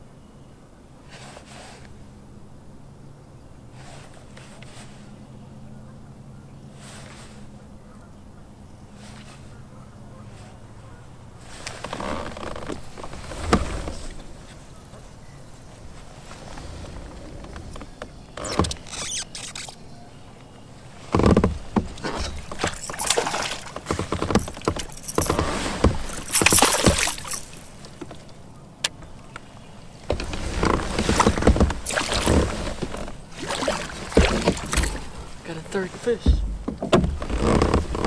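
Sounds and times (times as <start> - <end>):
water splashing: 20.9 - 38.0.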